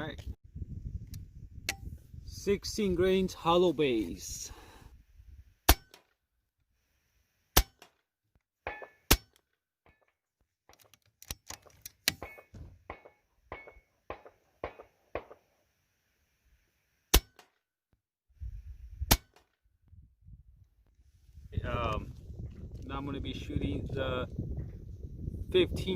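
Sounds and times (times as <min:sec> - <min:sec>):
metallic clicks and knocks: 0:08.7 - 0:15.4
air rifle shots: 0:12.1 - 0:15.6.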